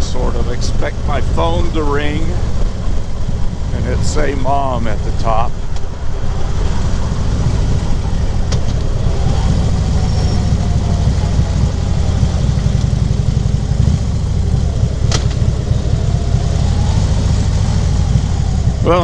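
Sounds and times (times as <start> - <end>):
motorcycle engine running: 0.0 - 19.0
sharp clicks: 10.2 - 17.2.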